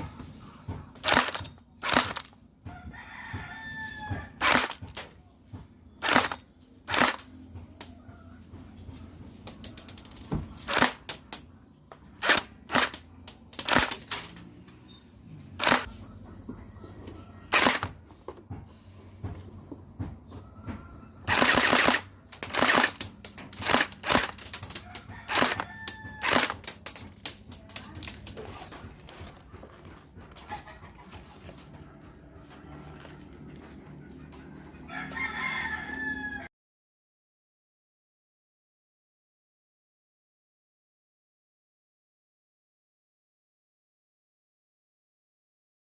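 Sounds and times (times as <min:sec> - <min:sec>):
airsoft gun shots: 0:01.0 - 0:02.3, 0:04.4 - 0:05.0, 0:06.0 - 0:07.3, 0:10.7 - 0:11.3, 0:12.2 - 0:13.0, 0:13.6 - 0:14.3, 0:15.6 - 0:15.9, 0:17.5 - 0:18.0, 0:21.3 - 0:28.1.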